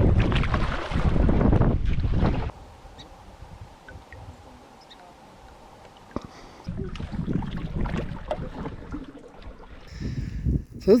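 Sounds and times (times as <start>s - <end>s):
water splashing: 0.0s - 2.6s, 5.4s - 9.9s.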